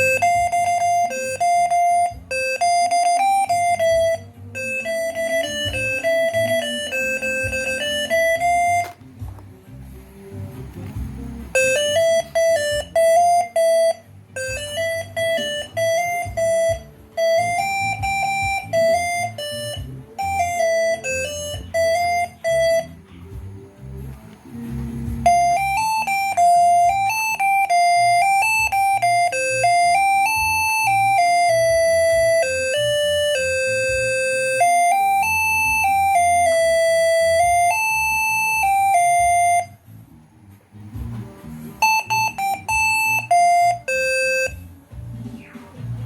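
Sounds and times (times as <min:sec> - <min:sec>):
air horn tooting a tune: 0:00.0 - 0:09.0, 0:11.6 - 0:23.0, 0:41.8 - 0:44.6.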